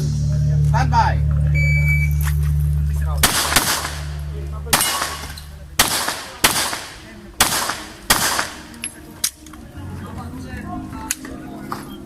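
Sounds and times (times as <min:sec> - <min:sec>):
gunshots with ringing tail: 0:03.2 - 0:08.7.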